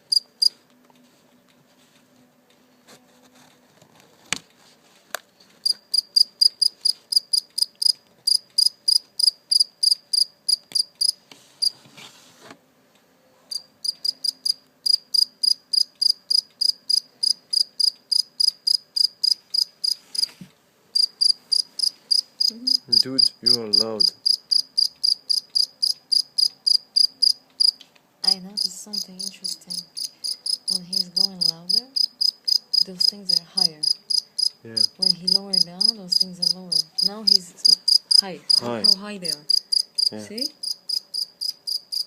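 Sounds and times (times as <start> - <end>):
cricket chirping: 0.1 - 0.5, 5.6 - 11.2, 13.5 - 20.3, 21.0 - 27.8, 29.0 - 42.0.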